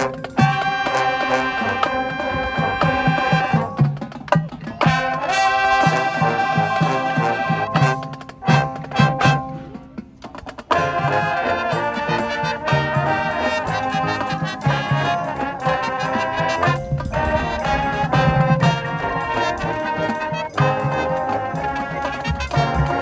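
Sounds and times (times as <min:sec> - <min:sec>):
marching band playing: 0:00.0 - 0:23.0.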